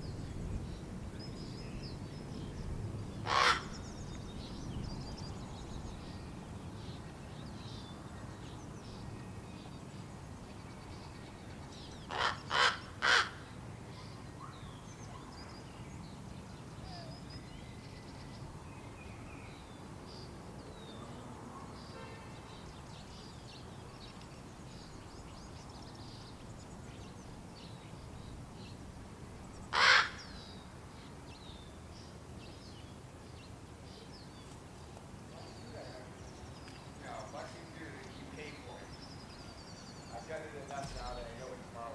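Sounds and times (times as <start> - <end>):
young ravens hoarse begging calls: 3.2 - 3.8, 12.1 - 13.4, 29.7 - 30.3.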